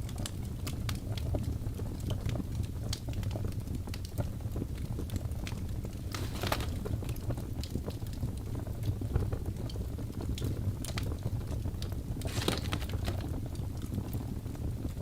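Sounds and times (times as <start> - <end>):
fire crackling in fireplace: 0.0 - 15.0
fire popping and snapping: 0.0 - 15.0
low rumble of flames: 0.0 - 15.0.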